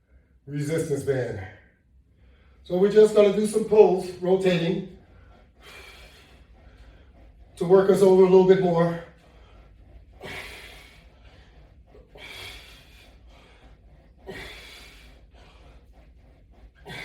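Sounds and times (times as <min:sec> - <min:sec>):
man breathing hard: 0:02.0 - 0:02.7, 0:04.8 - 0:07.6, 0:08.5 - 0:17.0.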